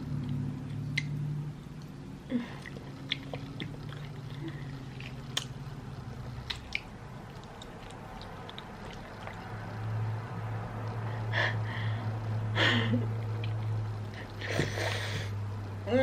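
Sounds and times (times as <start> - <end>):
steady low hum: 0.0 - 16.0
wet mouth eating sounds: 0.1 - 9.9, 13.1 - 15.2.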